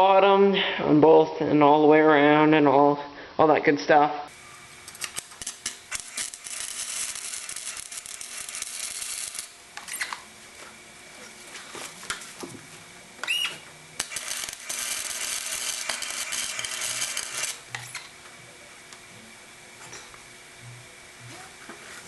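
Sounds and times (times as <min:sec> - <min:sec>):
brief squeak: 0:13.2 - 0:13.6.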